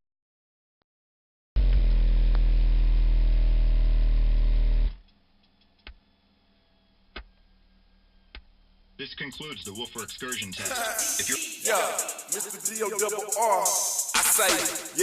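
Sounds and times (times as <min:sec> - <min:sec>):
sub-bass test tone: 0:01.6 - 0:05.1.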